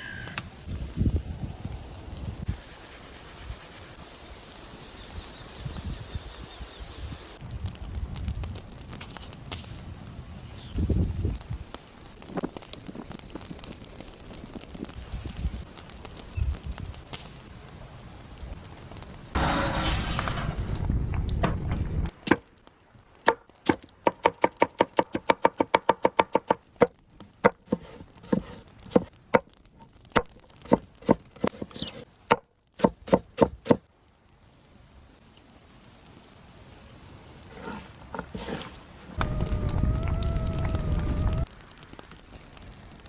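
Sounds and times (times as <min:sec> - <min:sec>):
loud hissing noise: 0:37.5 - 0:41.5.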